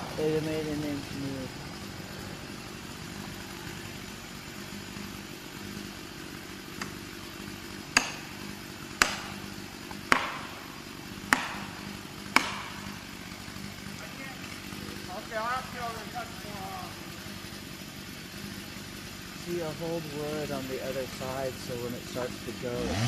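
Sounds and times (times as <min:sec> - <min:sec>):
steady engine hum: 0:00.0 - 0:23.0
hammer striking felling wedges: 0:07.9 - 0:13.6.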